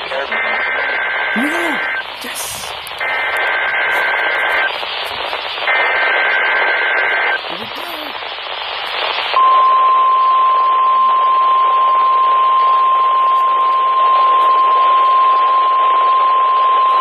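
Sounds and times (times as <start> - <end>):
radio static hiss: 0.0 - 9.5.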